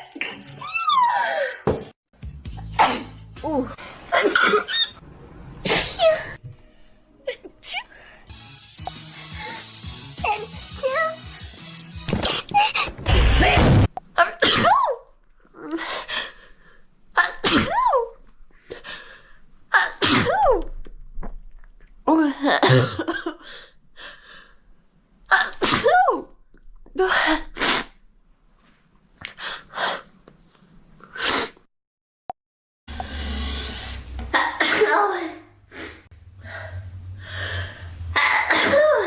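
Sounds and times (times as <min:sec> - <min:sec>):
girls sneezing: 0:02.7 - 0:03.2, 0:17.2 - 0:18.0, 0:19.7 - 0:20.4, 0:34.3 - 0:36.8, 0:37.8 - 0:39.0.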